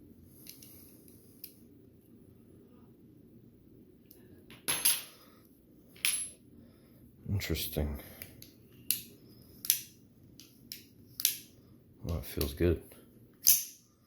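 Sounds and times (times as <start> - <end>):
faint clicks of metal parts: 0.4 - 1.6, 8.1 - 12.6.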